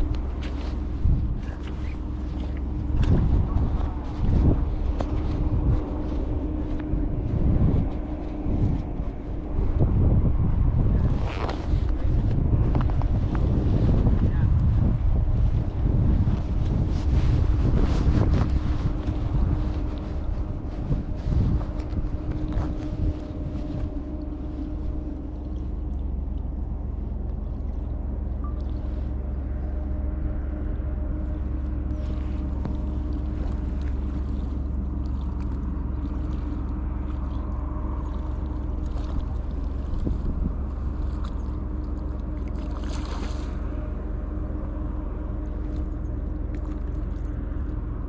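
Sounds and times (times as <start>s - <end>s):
boat motor humming: 0.0s - 48.0s.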